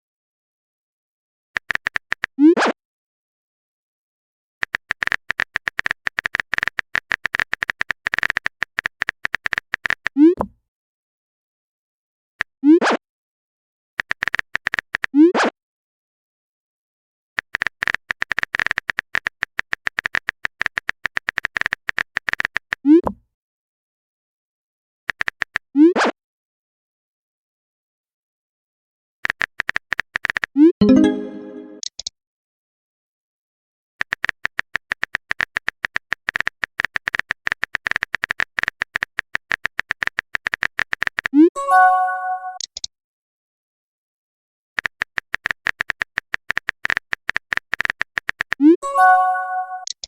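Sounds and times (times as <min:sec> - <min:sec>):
phone keyboard typing clicks: 0:01.6 - 0:02.3, 0:04.6 - 0:10.2, 0:14.0 - 0:15.1, 0:17.4 - 0:22.8, 0:25.1 - 0:25.6, 0:29.2 - 0:32.1, 0:34.0 - 0:41.3, 0:42.5 - 0:42.9, 0:44.8 - 0:48.8, 0:49.8 - 0:50.0
keyboard typing clicks: 0:25.1 - 0:25.6, 0:42.4 - 0:42.9, 0:44.8 - 0:48.8, 0:49.6 - 0:50.0
rising message sent bloop: 0:30.8 - 0:31.8.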